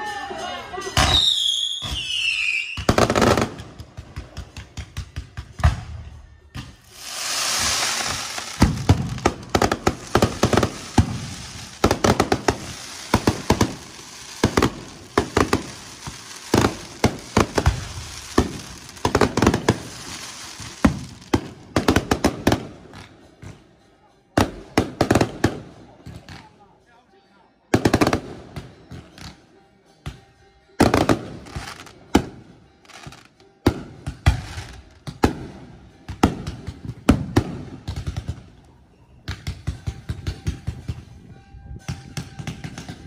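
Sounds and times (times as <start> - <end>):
firework falling whistle: 1.0 - 3.0
fireworks bangs and crackling pops: 1.0 - 23.6, 30.8 - 38.6, 39.3 - 41.1, 41.9 - 43.0
firework hiss: 6.8 - 22.4.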